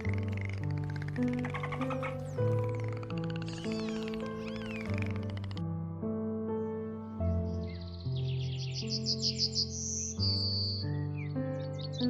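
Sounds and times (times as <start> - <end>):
animal high gliding calls: 0.0 - 5.6
background music with held chords: 0.0 - 12.0.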